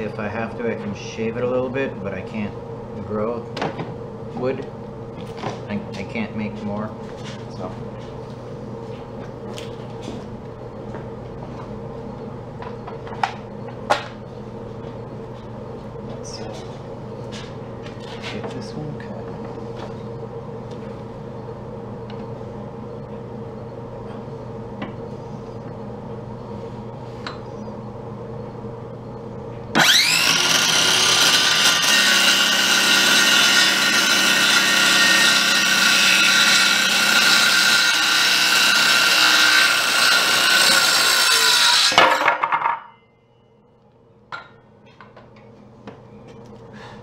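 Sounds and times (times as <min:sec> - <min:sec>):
low steady hum: 0:00.0 - 0:30.5, 0:42.0 - 0:47.0
power saw cutting wood: 0:29.8 - 0:42.2.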